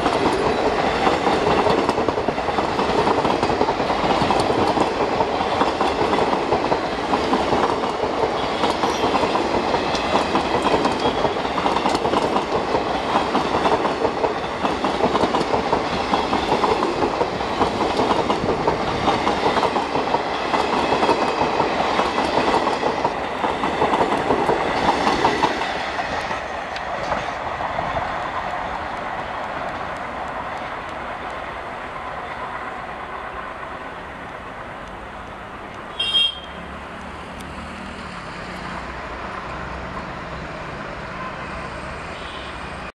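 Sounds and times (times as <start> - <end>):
train wheels clattering over rail joints: 0.0 - 28.4.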